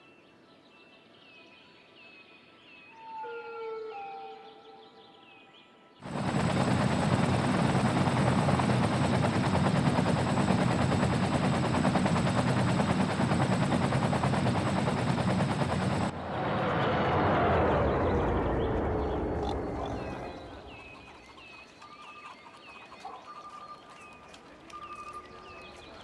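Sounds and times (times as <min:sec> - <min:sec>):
engine with fast even pulse: 0:06.1 - 0:21.4.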